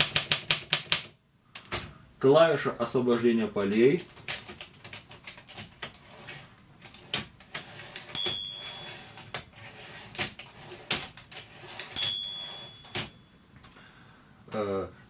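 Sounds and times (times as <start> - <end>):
typewriter clicking and knocking: 0.0 - 1.9, 3.7 - 13.2
typewriter carriage bell ding: 8.0 - 9.4, 11.7 - 13.4.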